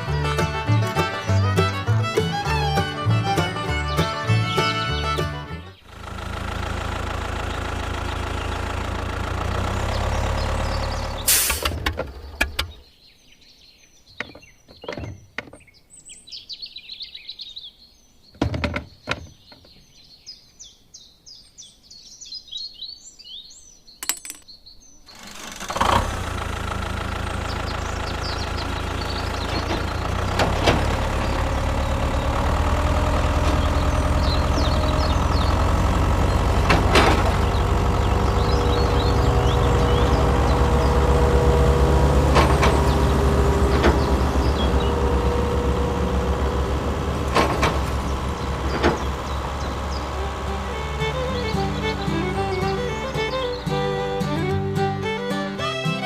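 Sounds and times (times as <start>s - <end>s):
engine running: 0.0s - 12.8s, 25.1s - 56.0s
birds chirping: 0.0s - 25.2s, 26.0s - 56.0s.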